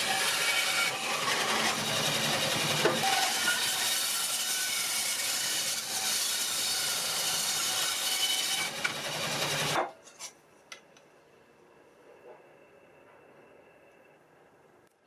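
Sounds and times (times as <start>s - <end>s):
tool scraping wood: 1.0s - 3.6s.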